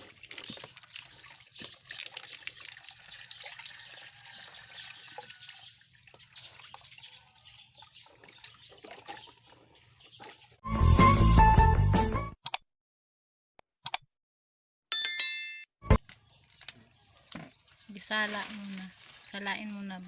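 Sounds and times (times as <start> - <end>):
hands washing roots in water: 0.0 - 10.6.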